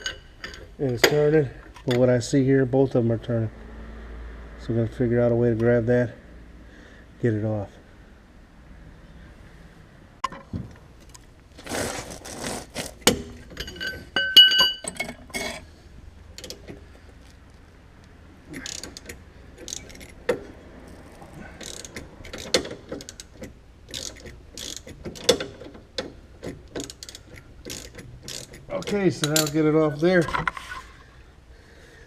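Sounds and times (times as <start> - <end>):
metal clanks: 0.0 - 2.0, 13.0 - 15.7, 21.6 - 31.0
short metallic ring: 13.6 - 15.6
ratchet wrench clicking: 18.5 - 29.6.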